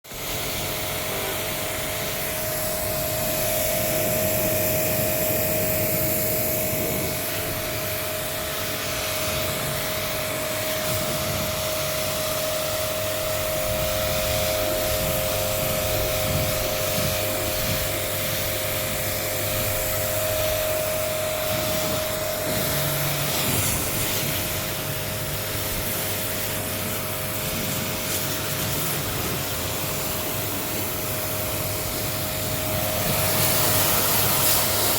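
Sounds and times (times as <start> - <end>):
electric machine whine and hiss: 0.1 - 34.9.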